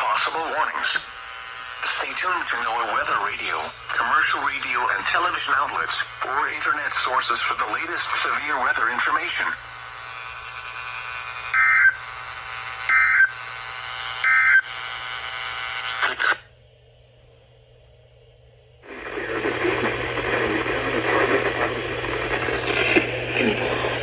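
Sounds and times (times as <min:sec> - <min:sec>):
loud rough static: 0:00.0 - 0:17.0, 0:18.4 - 0:24.0
radio receiver hiss: 0:00.0 - 0:24.0
data tone bursts: 0:14.2 - 0:14.8.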